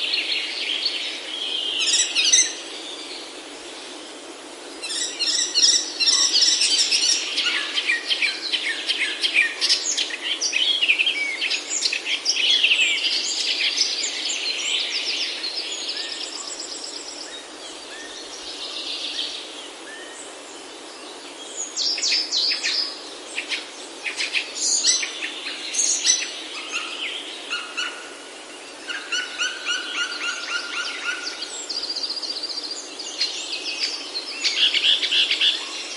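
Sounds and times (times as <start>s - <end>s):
wild birds calling and singing: 0.0s - 35.9s.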